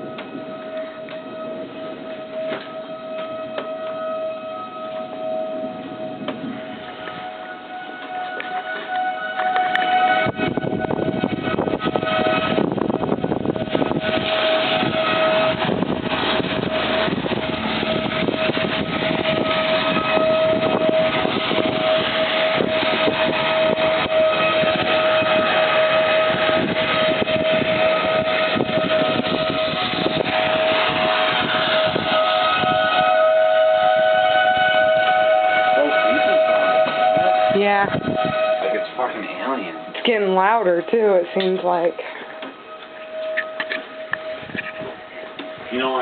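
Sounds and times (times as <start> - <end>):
tornado siren steady tone: 0.0 - 46.0.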